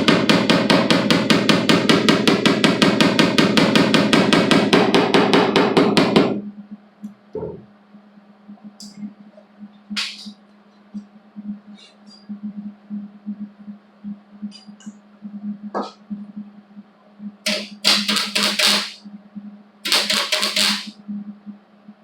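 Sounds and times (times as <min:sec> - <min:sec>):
steady low hum: 0:00.0 - 0:22.0
welder crackling: 0:19.8 - 0:20.9.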